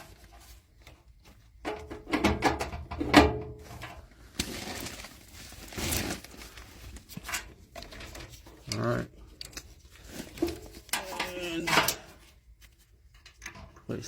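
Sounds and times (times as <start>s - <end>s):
rustling: 0.0s - 1.5s, 3.6s - 13.5s
clicks and knocks of parts: 7.1s - 13.9s.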